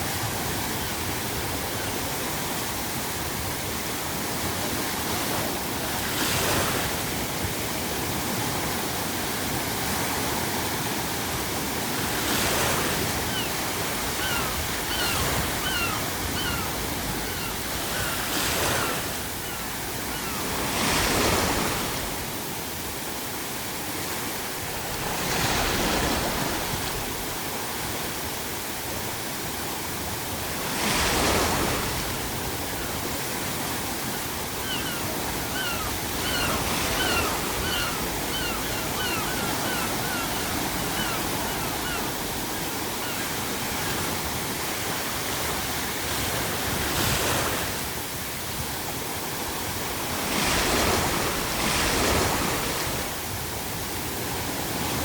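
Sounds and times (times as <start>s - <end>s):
ocean waves breaking: 0.0s - 55.0s
gull crying: 13.3s - 20.6s, 34.5s - 43.4s.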